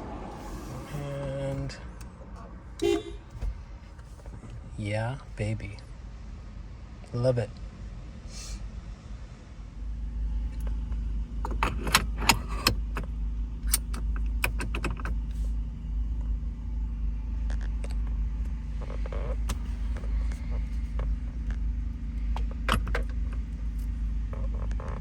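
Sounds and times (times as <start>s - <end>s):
car engine running: 0.0s - 25.0s
keys clicking and jangling: 11.4s - 13.0s.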